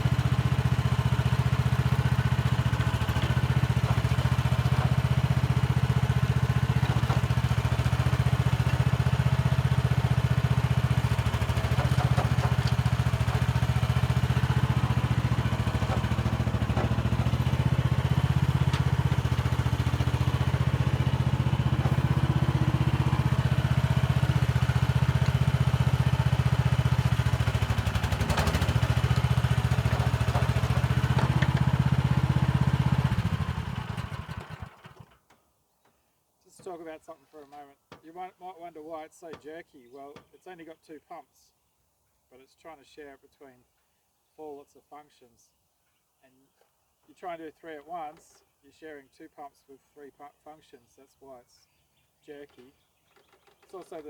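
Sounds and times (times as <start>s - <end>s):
mini excavator engine running: 0.0s - 35.2s
faint knocks of bucket and soil: 1.8s - 26.2s, 27.1s - 32.2s, 52.4s - 54.0s.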